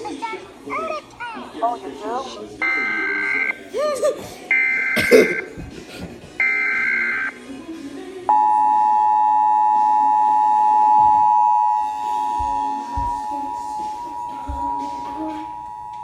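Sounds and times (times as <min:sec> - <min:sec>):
steady two-tone attention signal: 0:02.6 - 0:03.5, 0:06.4 - 0:07.4, 0:08.3 - 0:16.0.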